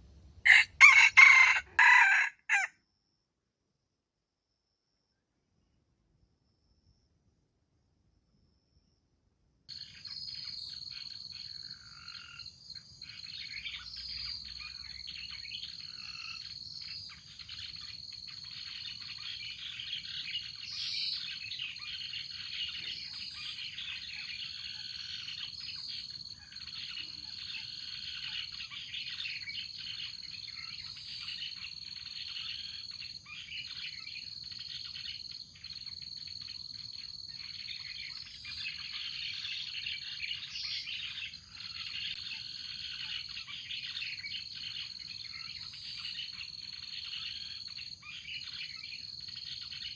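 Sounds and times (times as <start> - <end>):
birds chirping and calling: 0.5 - 2.7, 13.1 - 35.8, 37.4 - 49.9.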